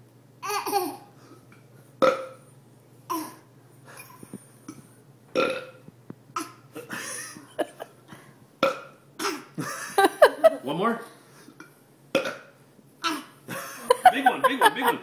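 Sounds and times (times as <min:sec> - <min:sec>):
person burping: 0:02.0 - 0:02.4, 0:05.4 - 0:05.8, 0:08.6 - 0:09.4, 0:12.2 - 0:12.5.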